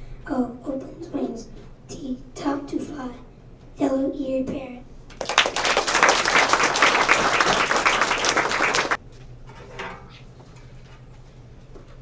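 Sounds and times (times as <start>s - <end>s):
audience clapping: 5.1s - 9.0s.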